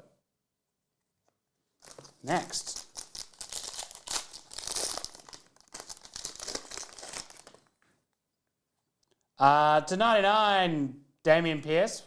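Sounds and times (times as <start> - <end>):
card pack wrapper crinkling: 1.8 - 7.8.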